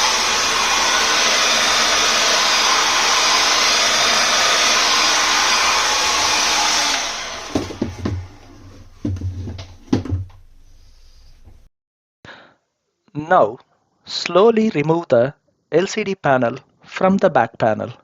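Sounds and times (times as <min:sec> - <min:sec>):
heat gun blowing air: 0:00.0 - 0:08.6.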